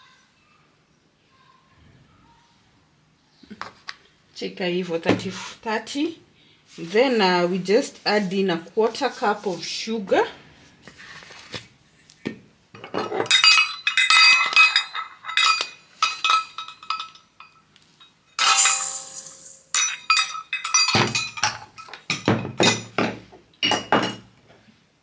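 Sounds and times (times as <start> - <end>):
utensils clinking against glass bowl: 12.8 - 24.3.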